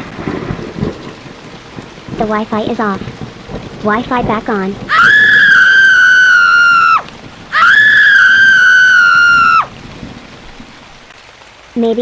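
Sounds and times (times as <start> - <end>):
high-pitched squeals: 4.9 - 9.7.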